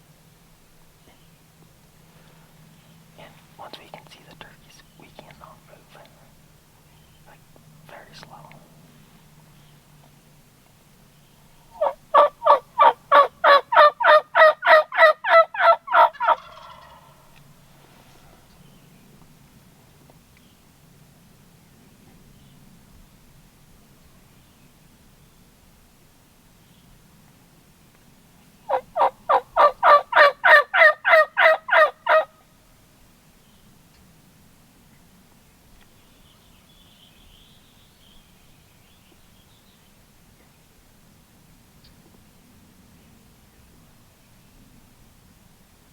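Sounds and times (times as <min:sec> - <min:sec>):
turkey yelping: 0:11.8 - 0:17.3, 0:28.7 - 0:32.3.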